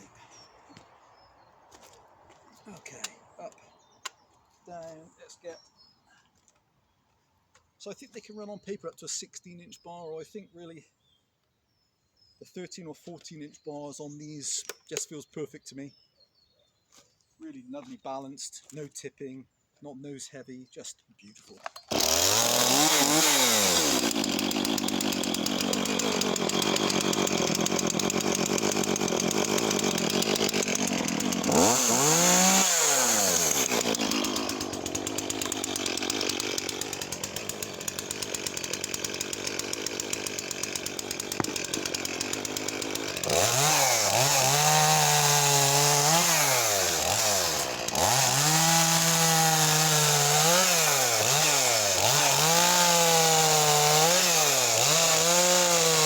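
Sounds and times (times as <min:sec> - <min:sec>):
chainsaw cutting log: 0:21.6 - 0:56.0.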